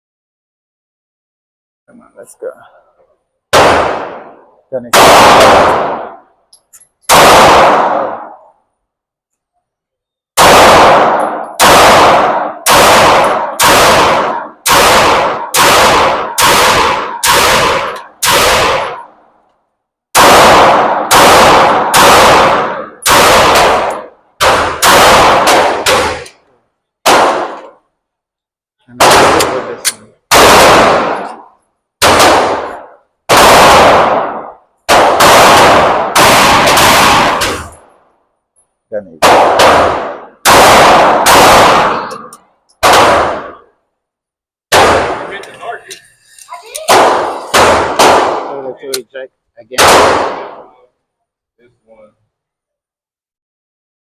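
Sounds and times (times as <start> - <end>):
handgun shots indoors: 10.4 - 19.1, 20.1 - 27.8, 29.1 - 37.9.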